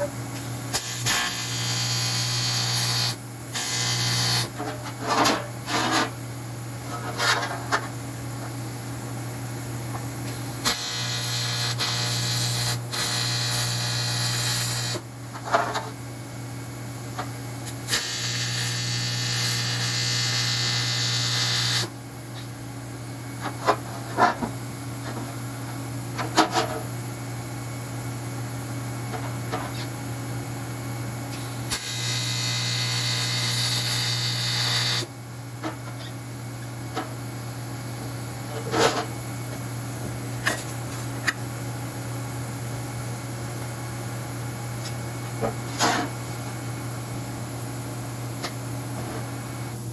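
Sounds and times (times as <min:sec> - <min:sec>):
welding machine hum: 0:00.7 - 0:06.1, 0:10.2 - 0:15.9, 0:17.0 - 0:22.0, 0:30.6 - 0:35.2
crackling welding arc: 0:00.8 - 0:04.5, 0:10.6 - 0:15.0, 0:17.6 - 0:21.9, 0:31.7 - 0:35.1.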